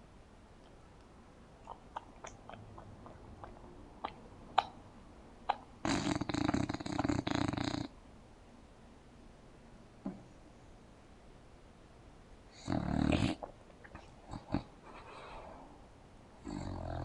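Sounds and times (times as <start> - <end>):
dog snoring: 5.8 - 8.0, 12.5 - 13.4, 16.4 - 17.0.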